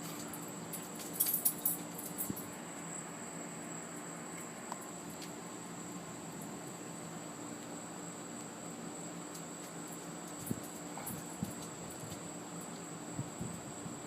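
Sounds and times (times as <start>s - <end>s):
small clicks and rattles: 0.0s - 2.4s
crickets chirring: 0.0s - 14.0s.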